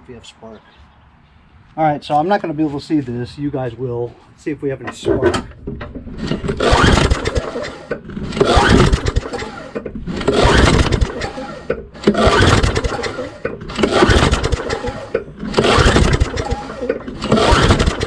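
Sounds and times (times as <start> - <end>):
mower engine cranking by pull-start: 4.9 - 18.0.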